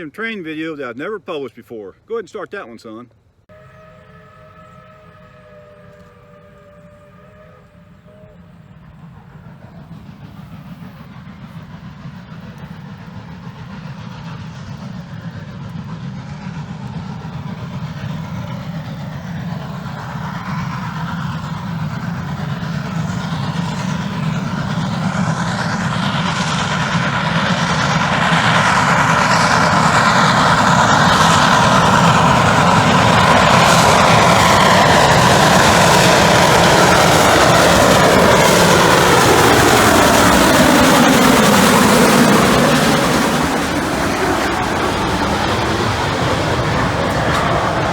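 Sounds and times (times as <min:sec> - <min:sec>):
train whistle chord: 0:03.5 - 0:11.9
steam locomotive running: 0:03.5 - 0:47.9.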